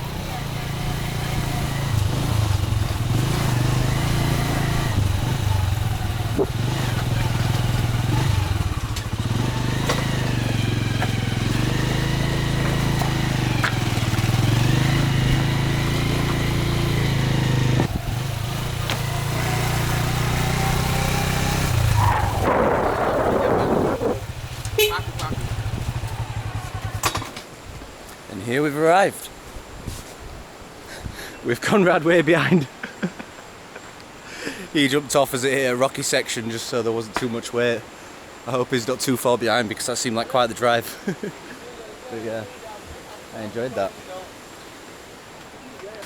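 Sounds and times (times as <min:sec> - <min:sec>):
motorcycle engine revving: 0:00.0 - 0:27.4.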